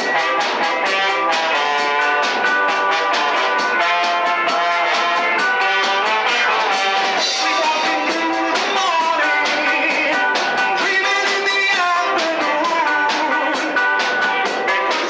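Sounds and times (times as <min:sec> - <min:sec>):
reggae band playing: 0:00.0 - 0:15.0.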